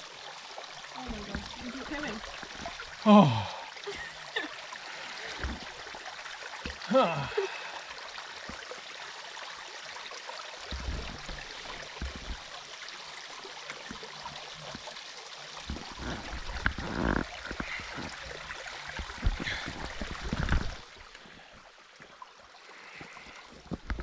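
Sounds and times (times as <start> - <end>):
stream water running: 0.0 - 24.0
low bumps and knocks: 1.0 - 2.8, 5.4 - 5.8, 10.7 - 12.5, 15.6 - 20.9.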